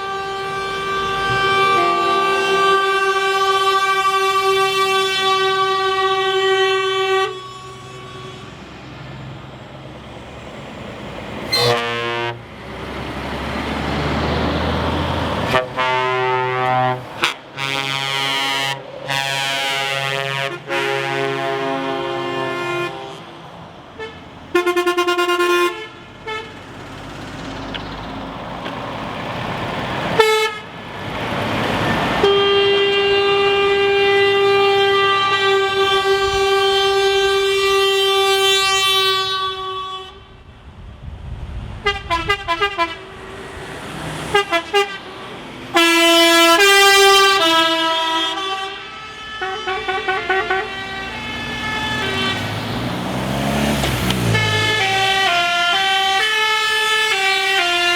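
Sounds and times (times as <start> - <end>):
truck horn blasts: 0.0 - 8.8, 11.4 - 12.5, 15.4 - 26.7, 30.1 - 30.7, 32.2 - 40.5, 41.8 - 43.5, 44.2 - 57.9.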